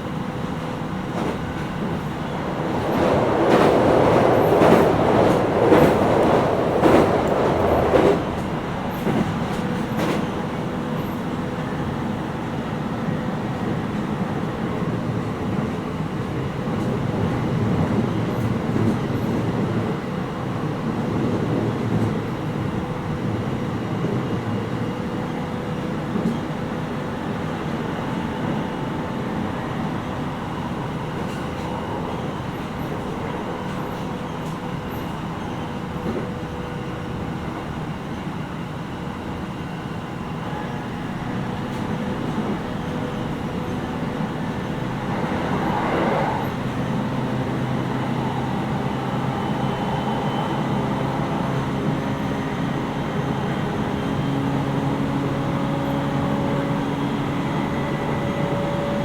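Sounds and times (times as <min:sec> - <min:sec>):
train wheels on rails: 0:00.0 - 0:59.0
brief rushing swell: 0:44.9 - 0:47.2.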